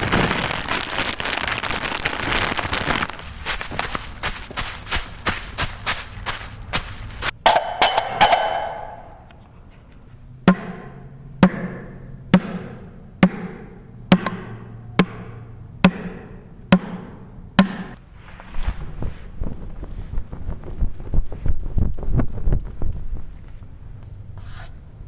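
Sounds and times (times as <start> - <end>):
sharp hollow knocks: 7.2 - 9.3, 10.4 - 18.0
short ringing burst: 7.5 - 9.3.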